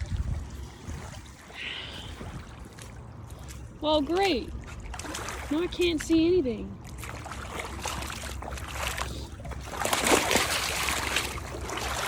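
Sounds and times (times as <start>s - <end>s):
dog splashing through water: 4.6s - 5.8s, 6.8s - 12.0s.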